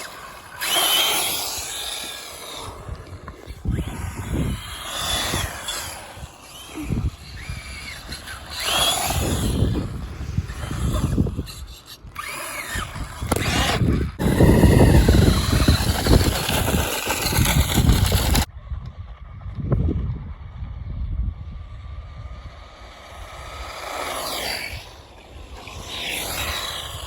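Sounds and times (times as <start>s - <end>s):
electric motor and gears whining: 0.0s - 18.5s, 21.8s - 27.0s
rough rumbling noise: 12.8s - 27.0s.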